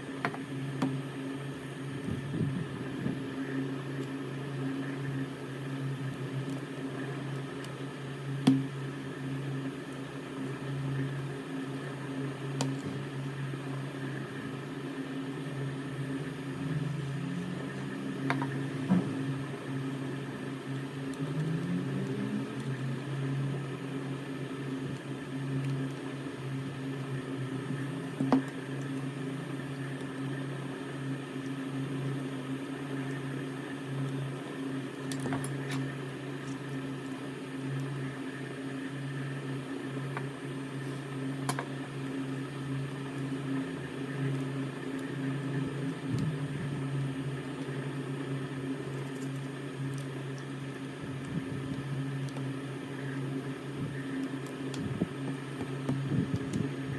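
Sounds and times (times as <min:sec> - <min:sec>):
machine electrical hum: 0:00.0 - 0:56.9.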